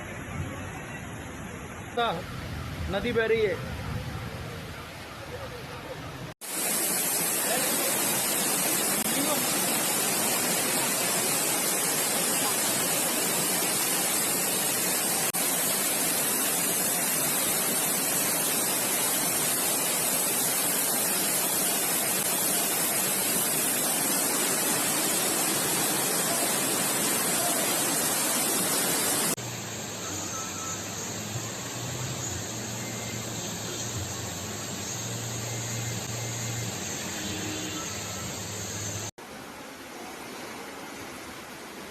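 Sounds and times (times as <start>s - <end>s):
floodwater rushing: 4.1s - 29.9s, 39.0s - 41.9s.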